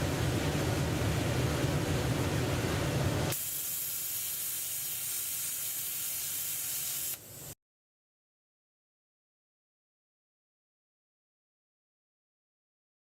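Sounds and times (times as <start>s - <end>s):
high hiss of air: 3.3s - 7.6s
plasma torch gouging: 3.3s - 7.6s.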